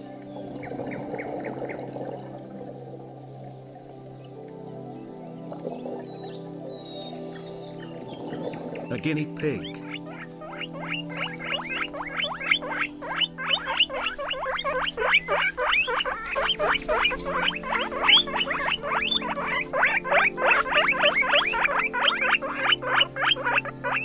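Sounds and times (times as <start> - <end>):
low background music: 0.0 - 24.0
guinea pig squeaking: 9.6 - 24.0.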